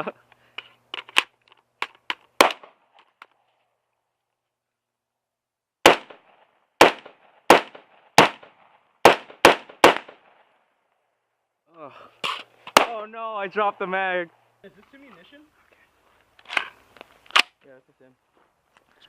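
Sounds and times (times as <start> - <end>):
gunshots: 2.4 - 2.8, 5.8 - 10.4, 12.7 - 13.0.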